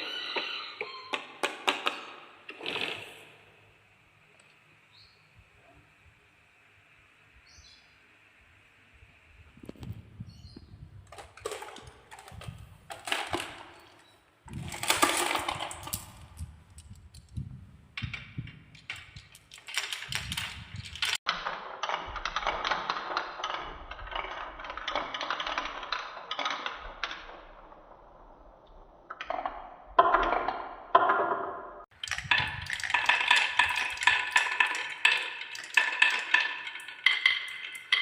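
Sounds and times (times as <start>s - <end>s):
marbles rolling and clacking: 11.1s - 38.0s.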